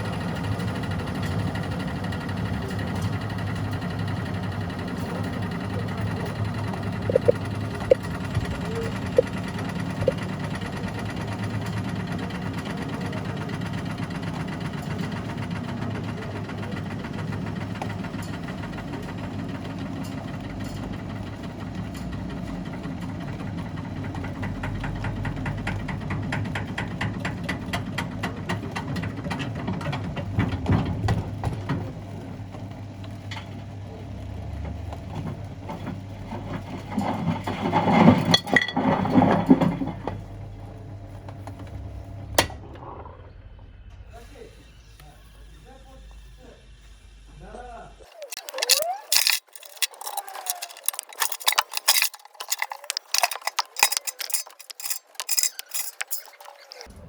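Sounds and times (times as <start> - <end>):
loud clatter: 48.2 - 56.9.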